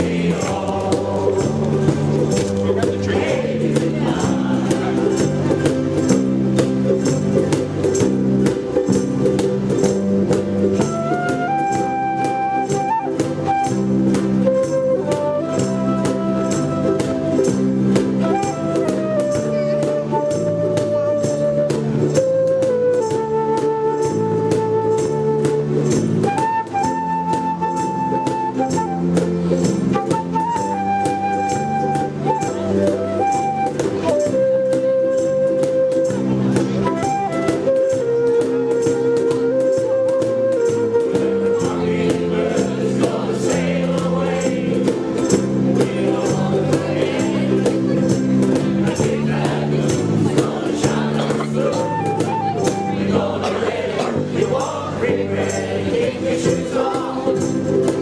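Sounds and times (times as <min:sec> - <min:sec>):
bass line: 0:00.0 - 0:10.8
percussive beat: 0:00.0 - 0:23.2, 0:35.6 - 0:58.0
strummed ukuleles: 0:00.0 - 0:58.0.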